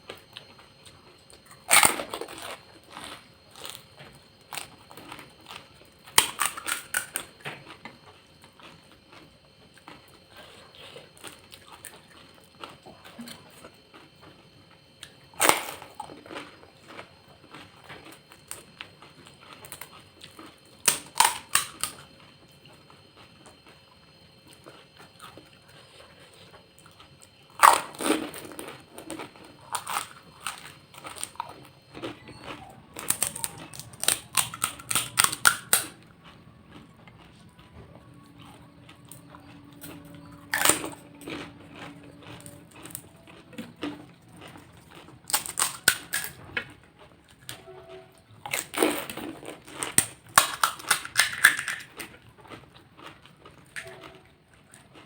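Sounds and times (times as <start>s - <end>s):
faint chewing: 0.0s - 55.0s
crisp shells crunching: 27.6s - 32.1s, 33.0s - 36.0s, 39.1s - 46.4s, 48.5s - 54.0s.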